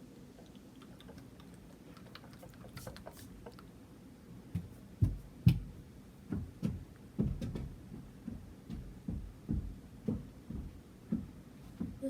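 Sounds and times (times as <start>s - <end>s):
soft low thumps and knocks: 4.5s - 12.0s.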